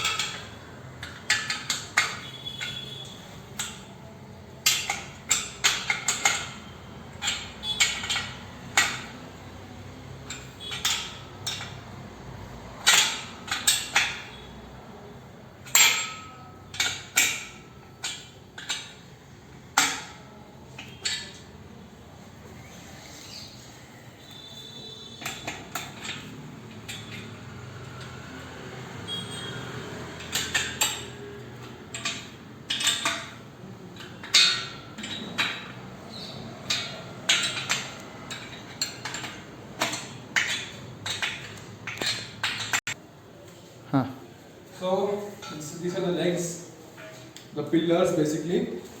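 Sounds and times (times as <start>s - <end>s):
metal parts clinking and knocking: 0.0s - 9.5s, 10.2s - 12.0s, 12.7s - 14.5s, 15.6s - 21.6s, 24.2s - 43.0s.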